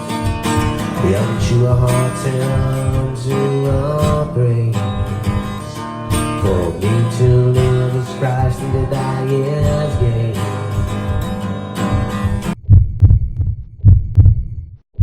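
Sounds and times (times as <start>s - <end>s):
acoustic guitar strumming: 0.0s - 12.6s
bass: 0.0s - 15.0s
sustained pitched notes: 4.8s - 12.6s.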